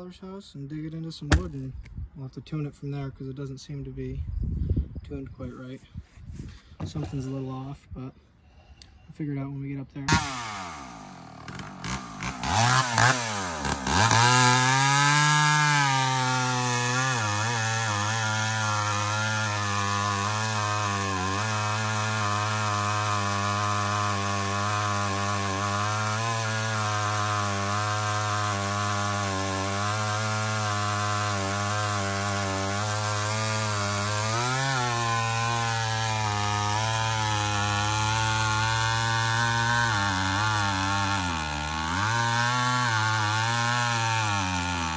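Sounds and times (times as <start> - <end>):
man talking: 0.0 - 4.2, 5.0 - 5.9, 6.8 - 8.2, 9.1 - 10.2
chainsaw revving and running: 10.1 - 44.9.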